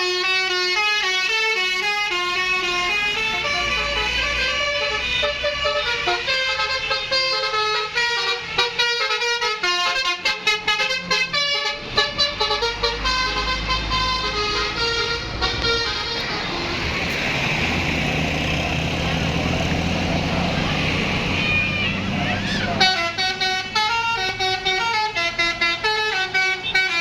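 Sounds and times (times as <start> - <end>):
multi-tone air horn tune: 0.0 - 17.3, 21.3 - 27.0
low engine rumble: 11.8 - 25.1.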